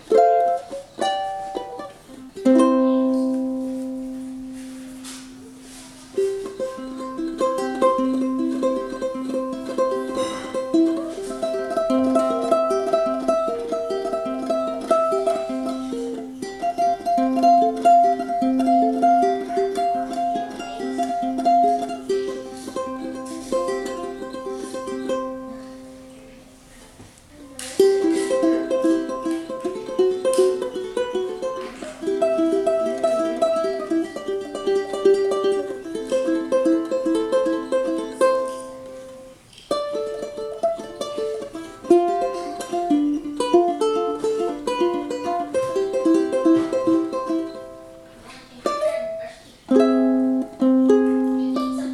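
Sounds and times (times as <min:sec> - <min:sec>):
ukulele plucked melody: 0:00.0 - 0:26.6, 0:27.4 - 0:51.9.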